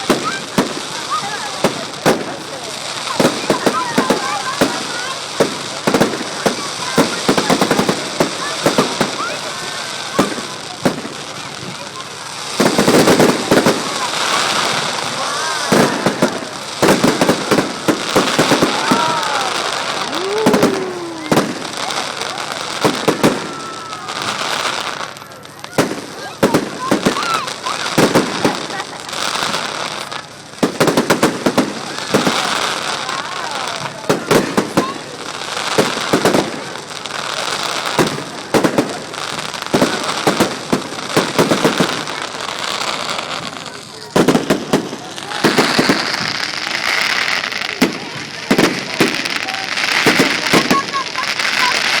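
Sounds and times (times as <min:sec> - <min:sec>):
fireworks sliding tones: 0:00.0 - 0:33.2, 0:33.8 - 0:52.0
fireworks bangs and crackling: 0:00.0 - 0:52.0
firework shells bursting: 0:12.6 - 0:25.2.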